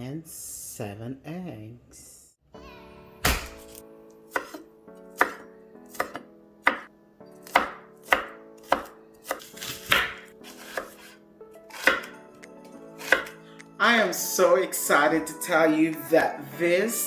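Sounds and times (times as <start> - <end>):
knife chopping on cutting board: 3.2 - 12.2, 13.0 - 13.4.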